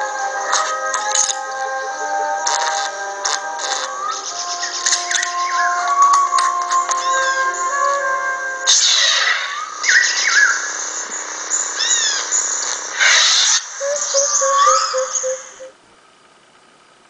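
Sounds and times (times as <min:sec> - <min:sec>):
birds chirping and calling: 0:00.0 - 0:15.8
steady hiss: 0:08.5 - 0:14.7.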